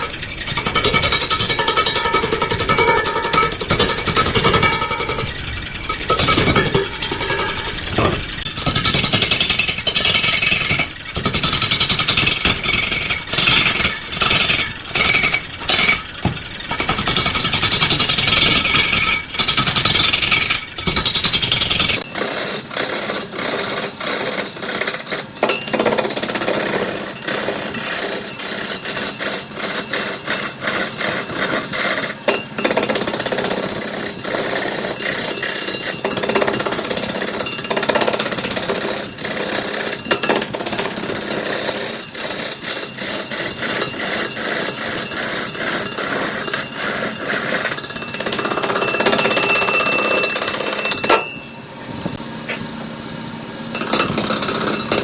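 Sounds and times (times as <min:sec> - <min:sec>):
rapid irregular knocking: 0:22.0 - 0:51.3
power tool cutting wood: 0:22.0 - 0:55.0.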